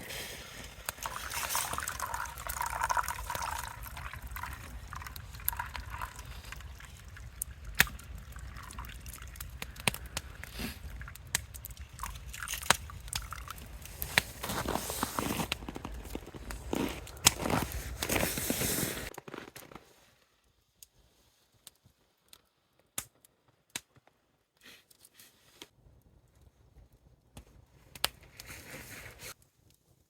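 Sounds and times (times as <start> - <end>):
liquid pouring: 0.1 - 9.9, 10.5 - 18.2.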